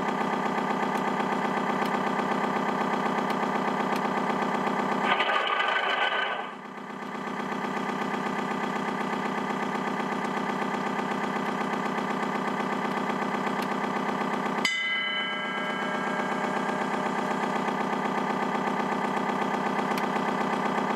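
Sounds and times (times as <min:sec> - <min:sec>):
diesel engine idling effect: 0:00.0 - 0:20.9
bell ringing: 0:14.6 - 0:16.6.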